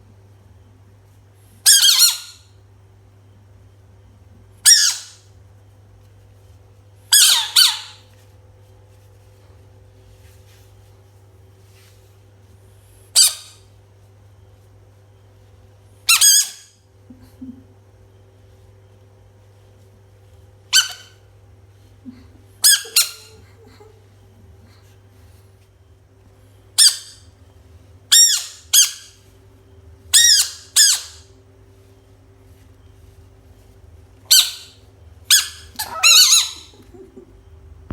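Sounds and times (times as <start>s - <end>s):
frog screaming: 35.8s - 37.1s.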